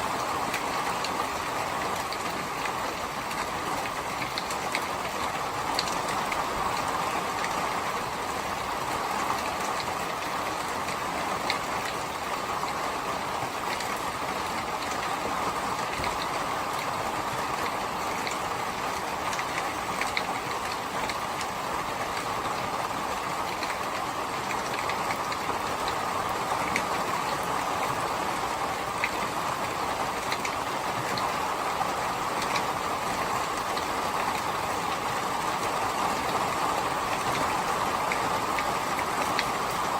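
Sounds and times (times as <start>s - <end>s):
steady rain falling: 0.0s - 39.9s
raindrop ticks: 0.4s - 39.9s.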